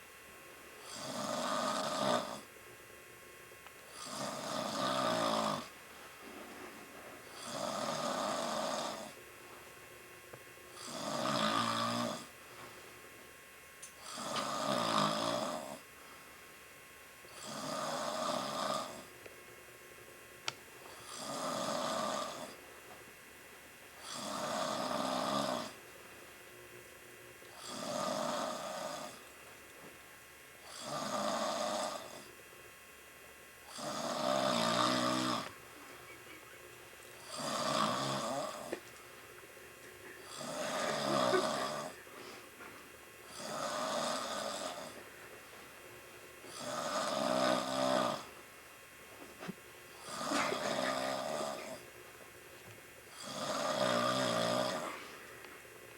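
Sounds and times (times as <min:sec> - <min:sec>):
man snoring: 0:00.8 - 0:02.5, 0:03.9 - 0:05.7, 0:07.3 - 0:09.2, 0:10.8 - 0:12.4, 0:14.0 - 0:15.9, 0:17.3 - 0:19.1, 0:20.9 - 0:22.6, 0:24.0 - 0:25.8, 0:27.5 - 0:29.2, 0:30.6 - 0:32.3, 0:33.7 - 0:35.5, 0:37.2 - 0:38.8, 0:40.2 - 0:42.1, 0:43.2 - 0:45.0, 0:46.5 - 0:48.3, 0:50.0 - 0:51.9, 0:53.1 - 0:55.2.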